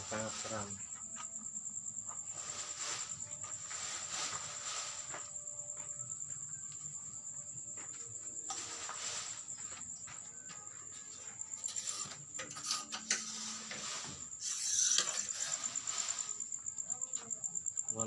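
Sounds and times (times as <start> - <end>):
crickets chirping: 0.0 - 18.0
soft rustles and scuffs: 0.1 - 12.4.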